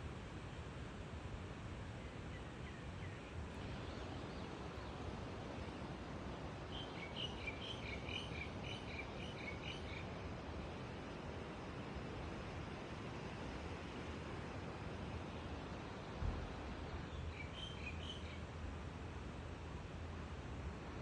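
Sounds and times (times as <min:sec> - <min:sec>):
outdoor background noise: 0:00.0 - 0:21.0
bird chirping: 0:06.7 - 0:10.1, 0:17.0 - 0:18.4.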